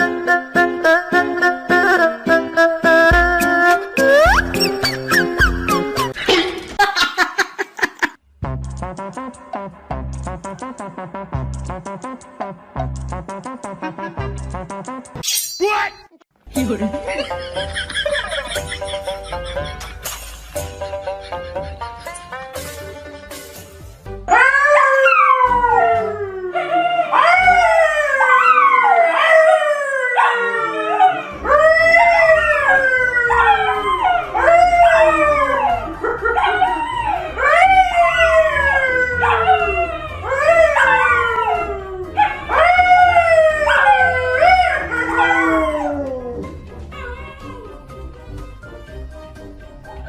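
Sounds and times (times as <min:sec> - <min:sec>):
dog howling: 0:24.3 - 0:47.9.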